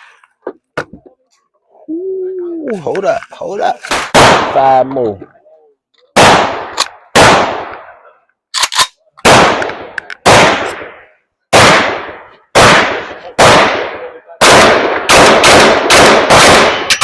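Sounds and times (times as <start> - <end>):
loud gunshots: 3.9 - 4.8, 6.2 - 7.9, 9.2 - 17.0.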